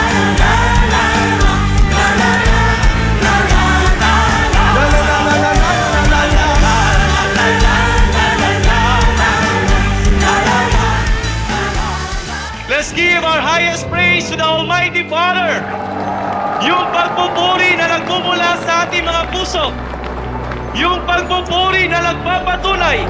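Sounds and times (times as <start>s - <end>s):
band playing over a beat: 0.0s - 13.4s
choir singing: 0.0s - 23.0s.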